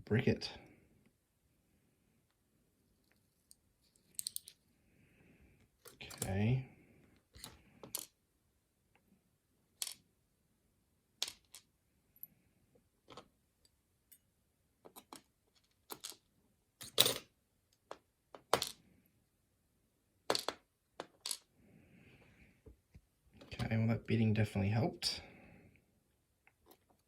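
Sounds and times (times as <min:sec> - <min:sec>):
metallic clicks of padlock parts: 0:03.4 - 0:04.6.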